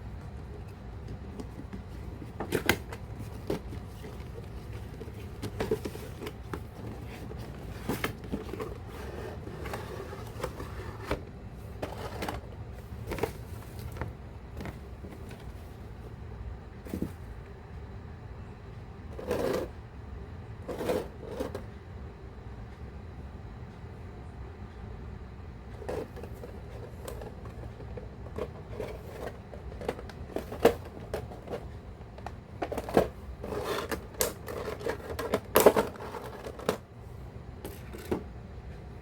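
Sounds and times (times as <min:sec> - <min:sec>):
steady low hum: 0:00.0 - 0:39.0
plastic and cardboard handling: 0:00.2 - 0:16.1, 0:16.8 - 0:17.4, 0:25.8 - 0:36.8.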